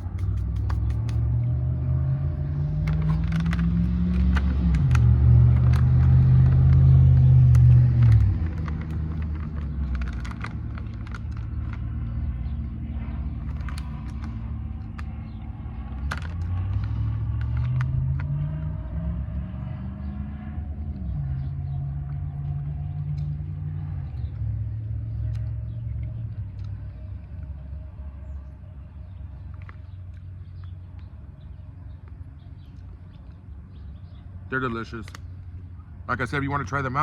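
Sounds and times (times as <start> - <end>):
faint clicks: 0.0 - 1.4
car engine accelerating: 0.0 - 37.0.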